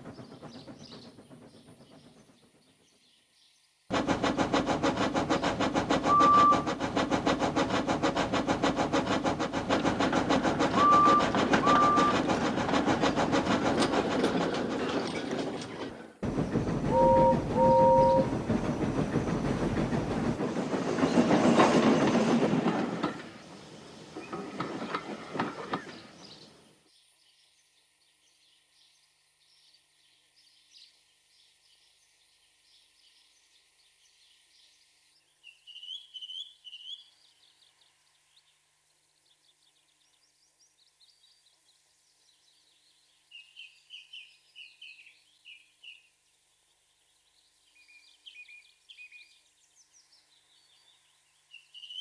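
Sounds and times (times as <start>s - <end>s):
steam engine passing: 0.0s - 2.7s, 3.9s - 26.7s
steam locomotive chuffing: 0.0s - 2.9s, 3.9s - 26.7s
low steam whistle toots: 5.9s - 6.9s, 10.7s - 12.3s, 16.8s - 18.6s
steam whistle: 6.0s - 6.8s, 10.8s - 12.3s, 16.9s - 18.5s.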